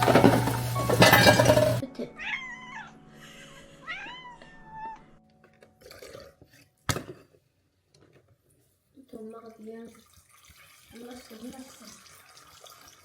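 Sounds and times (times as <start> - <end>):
cat meowing: 2.2 - 3.0, 3.8 - 5.2.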